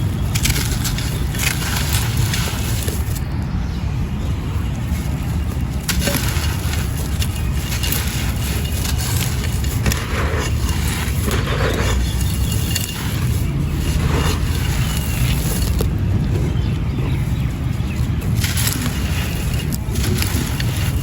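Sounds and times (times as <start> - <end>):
steady low rumble: 0.0 - 21.0
claypot crumbling by hand: 5.5 - 21.0.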